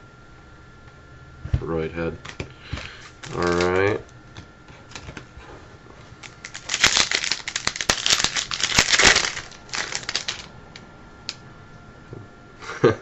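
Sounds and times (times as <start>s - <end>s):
wrapper tearing and crinkling: 2.8s - 4.0s, 6.2s - 10.5s.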